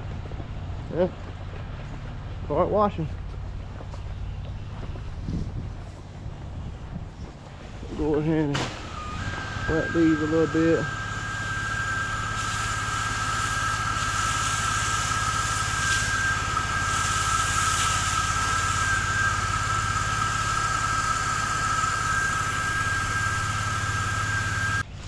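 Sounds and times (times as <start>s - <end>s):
pressure washer motor drone: 7.8s - 25.0s
water spraying hiss: 8.3s - 25.0s.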